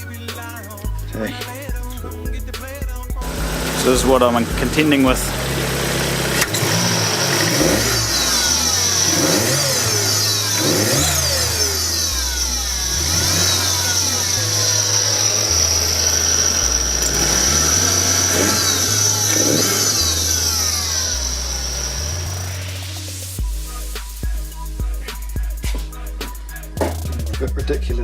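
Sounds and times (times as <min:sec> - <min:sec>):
engine revving: 0:00.0 - 0:27.8
high-pitched turbo squeal: 0:03.3 - 0:24.7.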